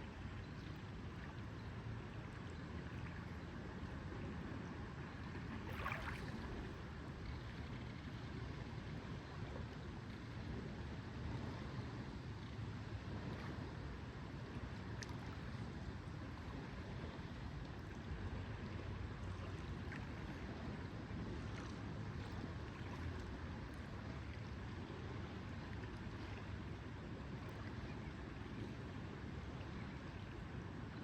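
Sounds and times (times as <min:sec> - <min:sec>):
wind: 0:00.0 - 0:31.0
faint light ticks: 0:14.9 - 0:15.4.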